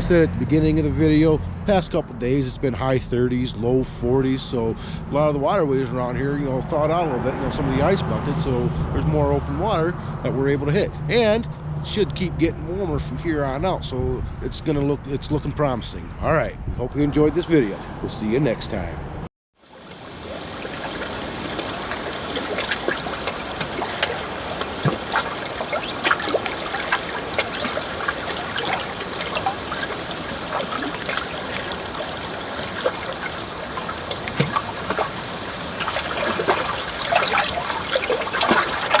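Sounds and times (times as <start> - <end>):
water trickling and splashing: 19.6 - 39.0.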